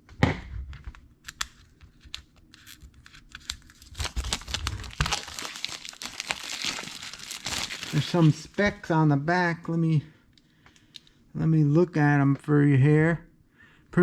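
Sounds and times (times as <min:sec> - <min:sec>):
packaging tearing and crinkling: 0:01.3 - 0:08.7.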